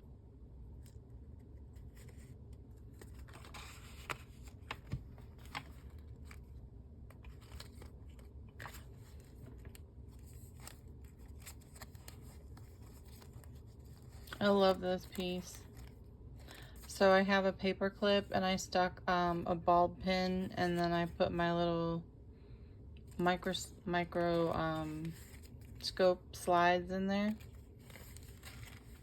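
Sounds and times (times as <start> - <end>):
paper rustling: 0.8 - 16.9, 24.2 - 26.0, 27.2 - 29.0.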